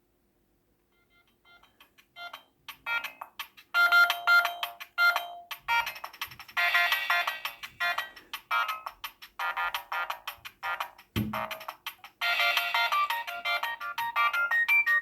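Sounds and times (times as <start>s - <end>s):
phone ringtone chiming tune: 1.0s - 10.0s, 12.2s - 15.0s.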